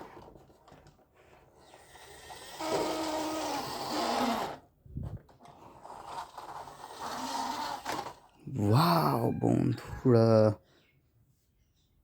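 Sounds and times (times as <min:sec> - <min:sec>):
toy helicopter whirring: 0:01.7 - 0:04.6, 0:05.5 - 0:08.3.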